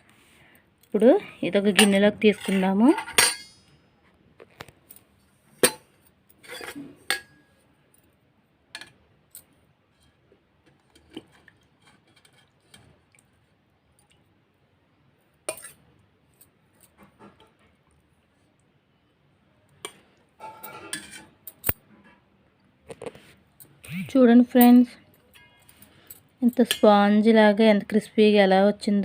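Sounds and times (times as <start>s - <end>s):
utensils clinking against dishes: 1.7s - 3.8s.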